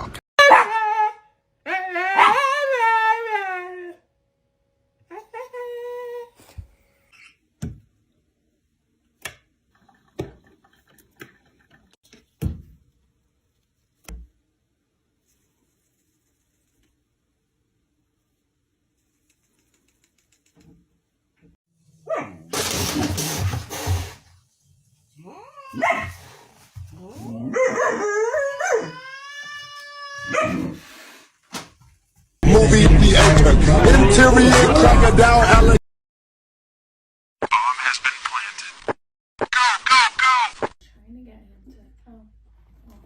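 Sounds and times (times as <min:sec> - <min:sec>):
dog howling: 0:00.4 - 0:04.0, 0:27.0 - 0:29.2, 0:30.2 - 0:30.8.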